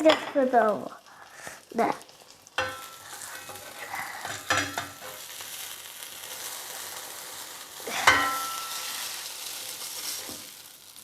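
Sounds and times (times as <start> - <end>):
batter sizzling in frying pan: 0.0 - 11.0
utensil knocking on pan: 8.0 - 8.8.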